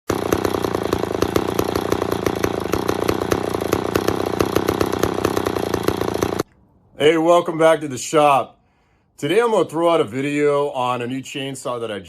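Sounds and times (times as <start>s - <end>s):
chainsaw engine running: 0.1s - 6.5s.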